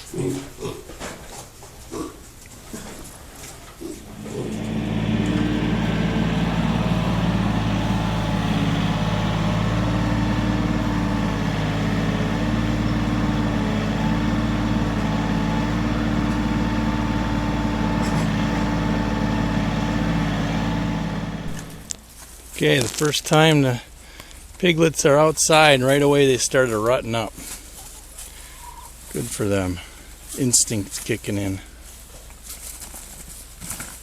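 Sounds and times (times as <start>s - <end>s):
engine running steadily: 3.8s - 22.1s.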